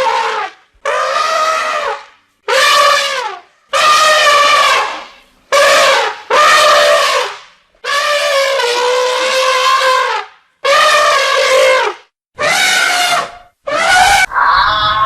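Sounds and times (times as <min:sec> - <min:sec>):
animal calling loudly: 0:12.4 - 0:15.0.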